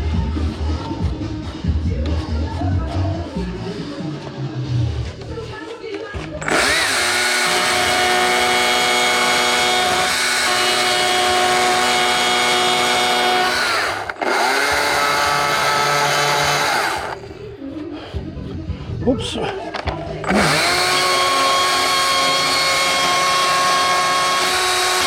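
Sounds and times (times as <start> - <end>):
chainsaw revving: 6.4 - 17.2, 20.2 - 25.0.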